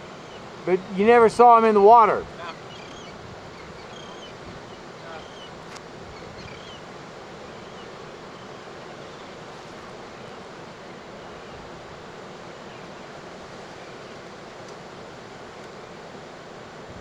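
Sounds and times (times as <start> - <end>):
ocean surf breaking: 0.0 - 17.0
wind on microphone: 2.1 - 8.2.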